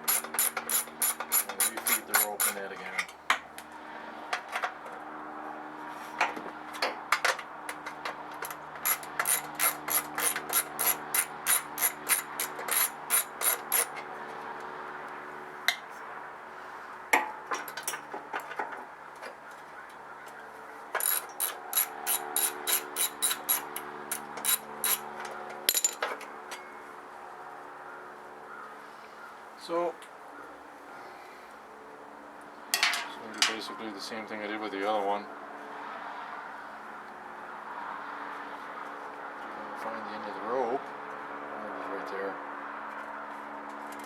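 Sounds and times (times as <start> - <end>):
ratchet wrench clicking: 0.0 - 2.6, 8.4 - 13.9, 21.0 - 25.1.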